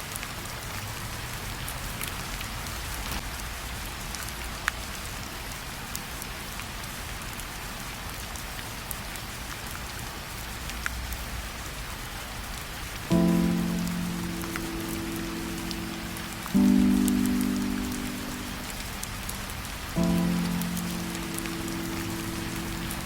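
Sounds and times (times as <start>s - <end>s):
steady rain falling: 0.0s - 23.0s
sharp water drip: 13.1s - 23.0s.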